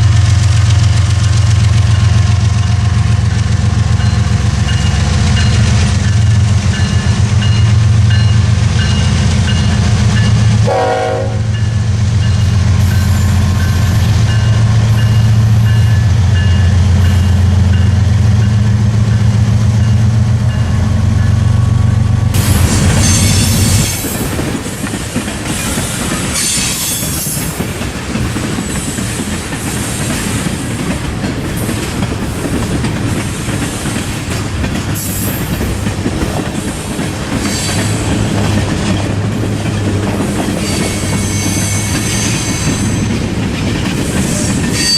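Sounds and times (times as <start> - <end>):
diesel locomotive engine rumble: 0.0 - 44.9
train horn: 10.6 - 11.9
wheels clicking over rail joints: 23.7 - 44.9.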